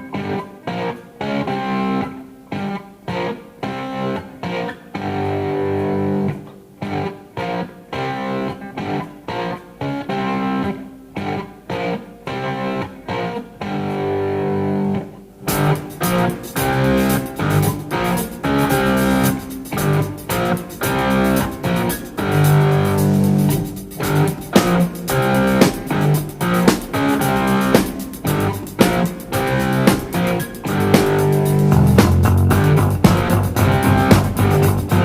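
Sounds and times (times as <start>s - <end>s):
plucked guitar music: 0.0s - 35.0s.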